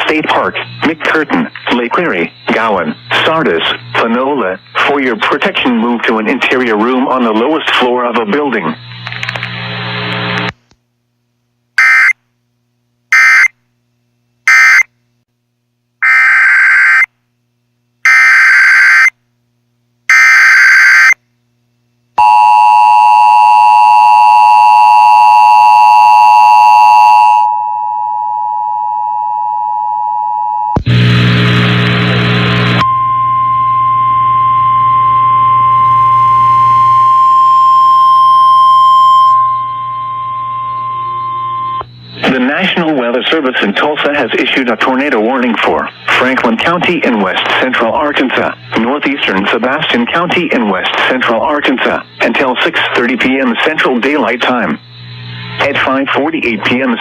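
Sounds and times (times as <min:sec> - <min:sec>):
screeching data bursts: 0:00.0 - 0:05.7, 0:11.8 - 0:12.2, 0:16.0 - 0:17.1, 0:32.7 - 0:44.1, 0:45.6 - 0:57.0
weather radio alarm tone: 0:11.8 - 0:12.2, 0:13.1 - 0:13.5, 0:14.5 - 0:14.9, 0:16.0 - 0:17.1, 0:18.1 - 0:19.1, 0:20.1 - 0:21.2, 0:22.2 - 0:31.0, 0:32.7 - 0:43.1
burst of noise: 0:30.8 - 0:32.8
two-tone attention signal: 0:32.8 - 0:41.8.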